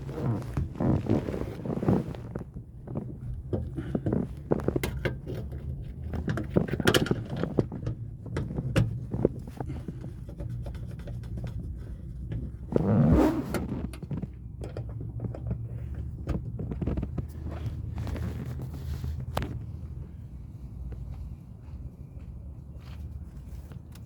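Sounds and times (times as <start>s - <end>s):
rustling scrape: 0.0s - 3.2s, 16.9s - 19.6s.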